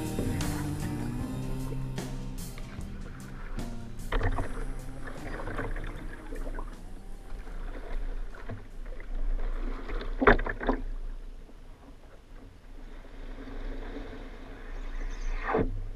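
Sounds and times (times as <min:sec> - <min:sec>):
paddle strokes splashing in water: 0:00.0 - 0:15.9.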